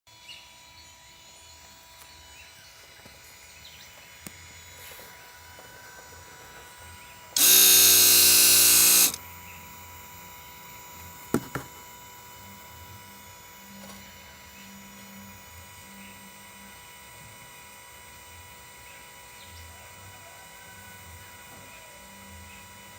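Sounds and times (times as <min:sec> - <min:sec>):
pump motor buzzing: 0:00.1 - 0:22.9
sharp clicks: 0:07.4 - 0:09.2.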